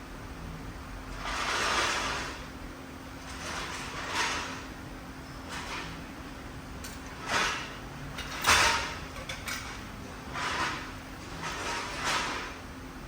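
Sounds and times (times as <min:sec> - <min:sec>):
short scraping sounds: 0:03.3 - 0:04.7, 0:10.3 - 0:12.6.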